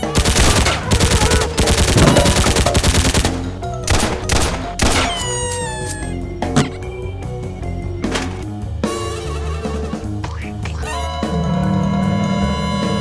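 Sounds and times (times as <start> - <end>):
rapid gunfire-like shots: 0.0 - 6.7.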